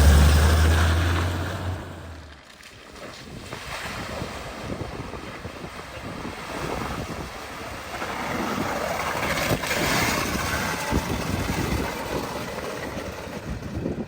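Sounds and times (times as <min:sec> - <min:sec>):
vehicle splashing through water: 0:00.0 - 0:02.6, 0:06.8 - 0:14.0
wind on microphone: 0:03.2 - 0:14.0.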